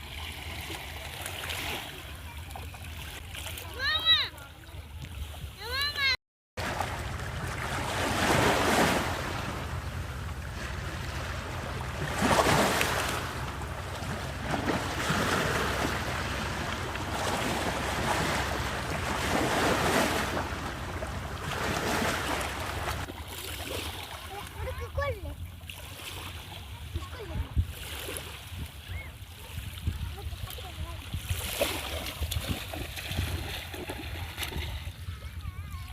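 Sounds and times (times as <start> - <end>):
waves breaking on shore: 0.0 - 35.9
wind on microphone: 26.9 - 35.9.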